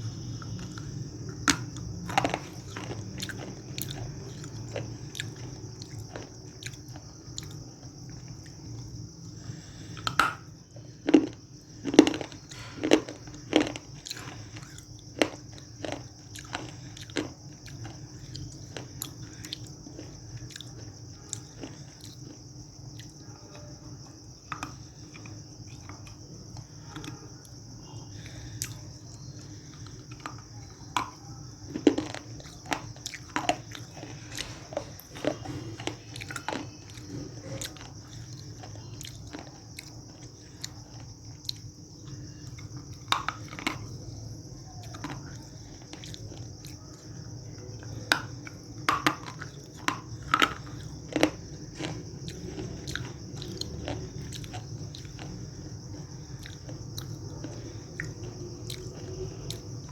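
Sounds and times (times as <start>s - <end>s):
faint high whine: 0.0s - 10.6s
crunchy chewing: 0.0s - 59.9s
steady hum: 0.0s - 59.9s.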